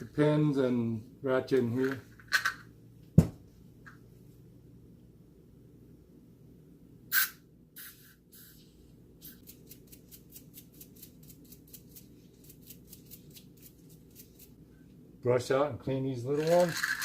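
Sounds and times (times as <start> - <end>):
small brush scrubbing: 9.4 - 14.6.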